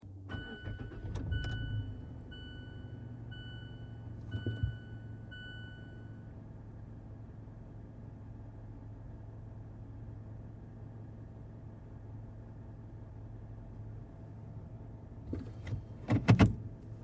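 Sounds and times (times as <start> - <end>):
low engine hum: 0.0 - 17.0
car warning chime dinging: 0.3 - 6.3.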